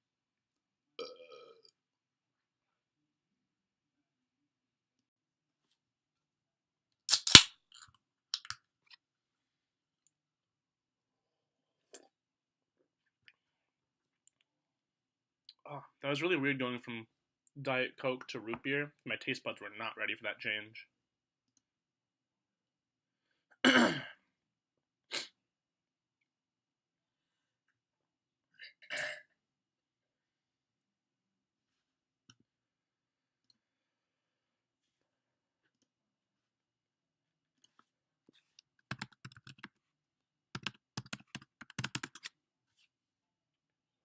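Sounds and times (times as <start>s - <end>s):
man belching: 1.0s - 1.6s, 23.7s - 24.1s
rapid sharp clicks and taps: 40.6s - 42.3s.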